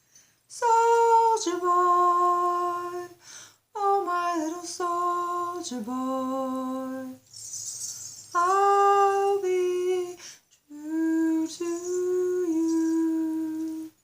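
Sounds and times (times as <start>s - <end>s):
person singing wordless notes: 8.4s - 14.0s.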